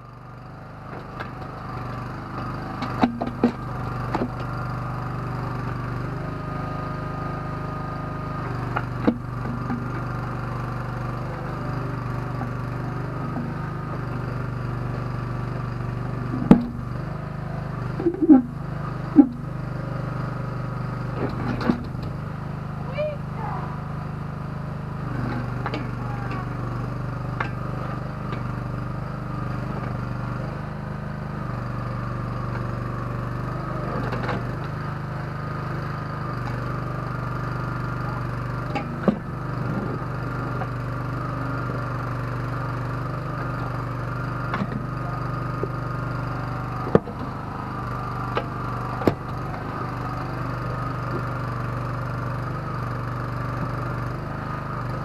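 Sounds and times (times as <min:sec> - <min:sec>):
small engine running: 0:00.0 - 0:55.0
sharp knocks and clanks: 0:16.4 - 0:16.8.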